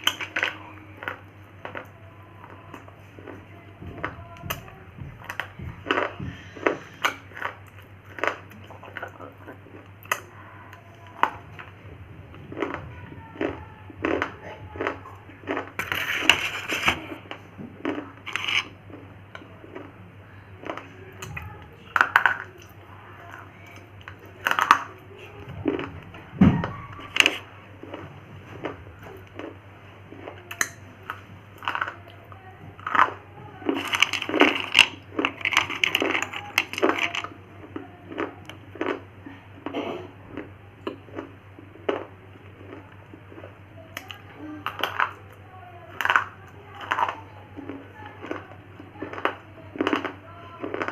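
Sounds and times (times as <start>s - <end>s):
slate pencils crunching and snapping: 13.4s - 18.7s, 23.3s - 24.9s, 32.8s - 37.4s, 45.9s - 50.9s.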